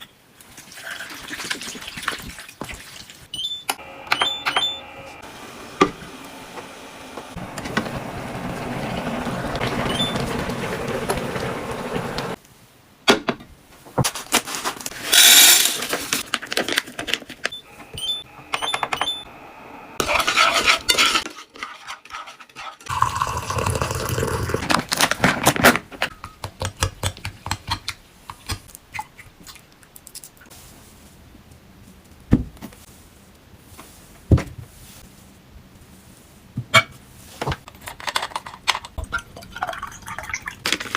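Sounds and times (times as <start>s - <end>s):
dishes and utensils clattering: 20.0s - 23.0s, 36.8s - 40.9s.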